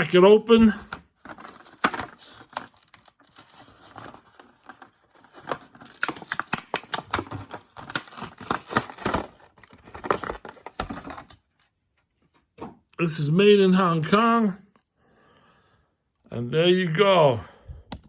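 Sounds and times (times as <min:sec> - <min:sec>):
packaging crinkling and tearing: 0:01.2 - 0:11.4.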